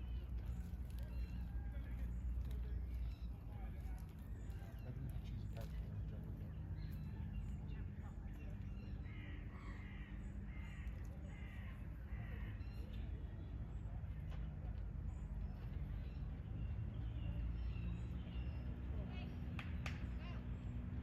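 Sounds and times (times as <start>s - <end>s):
bird harsh calls: 0.0s - 13.8s.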